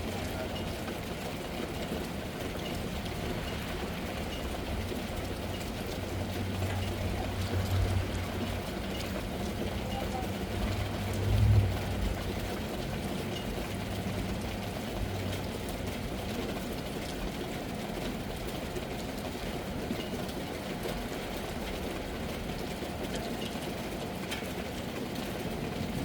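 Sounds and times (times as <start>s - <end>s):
low thunder rumble: 10.6s - 13.0s.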